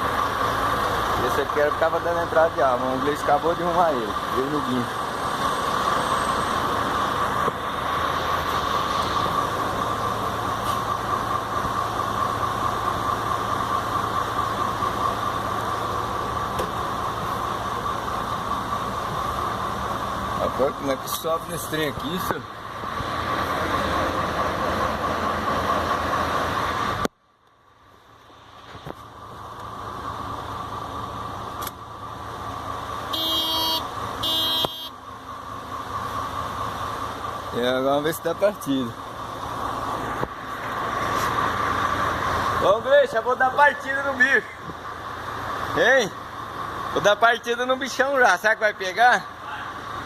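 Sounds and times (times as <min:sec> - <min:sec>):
vehicle horn honks: 0:33.1 - 0:35.0.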